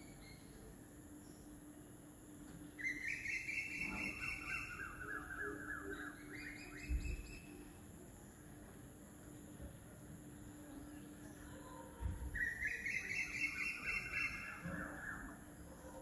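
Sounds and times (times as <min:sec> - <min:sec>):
songbird singing trills: 0:00.0 - 0:01.6, 0:02.6 - 0:07.8, 0:12.3 - 0:15.8.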